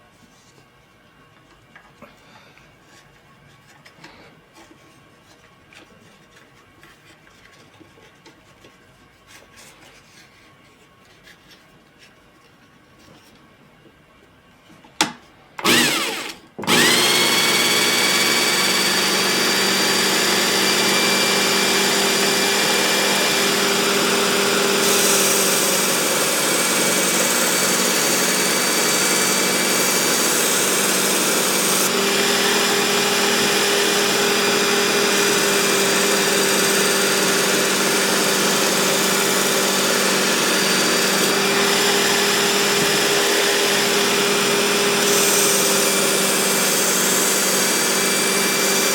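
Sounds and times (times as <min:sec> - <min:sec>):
belt sharpener whining: 0:15.6 - 0:48.9.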